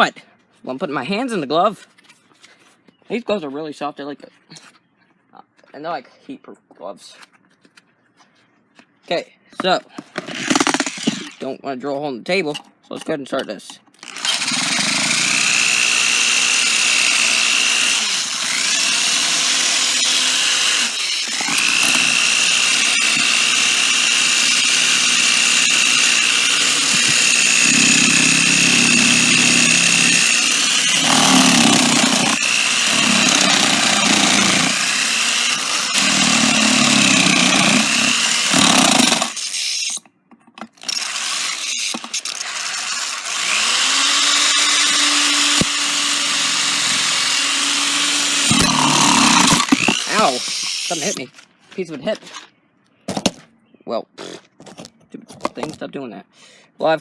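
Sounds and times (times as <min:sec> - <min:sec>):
power drill whining: 0:10.1 - 0:11.4, 0:14.0 - 0:40.0, 0:40.8 - 0:51.3
drill bit grinding: 0:10.2 - 0:11.4, 0:14.0 - 0:40.0, 0:40.8 - 0:51.3.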